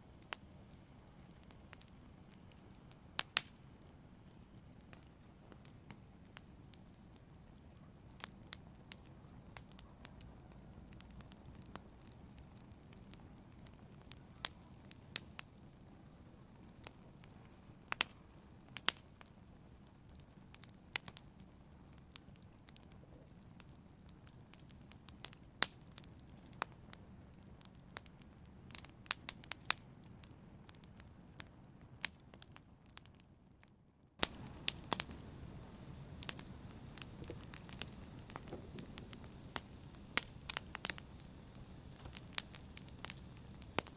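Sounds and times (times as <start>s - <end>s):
fire crackling and popping: 0.0s - 43.9s
flames rushing: 34.2s - 43.9s.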